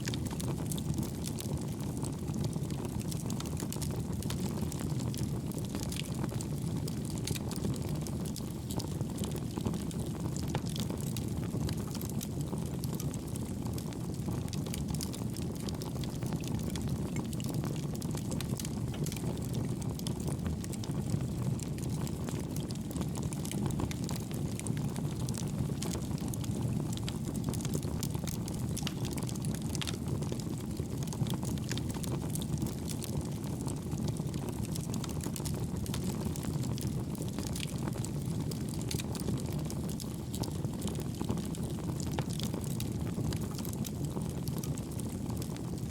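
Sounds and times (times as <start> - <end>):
stove fire low rumble: 0.0 - 45.9
wood crackling and popping: 0.0 - 45.9.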